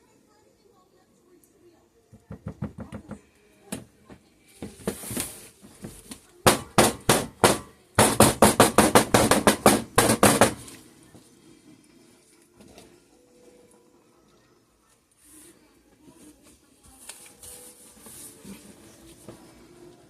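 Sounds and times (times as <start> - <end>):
equipment knocking on hard surface: 5.8 - 10.6.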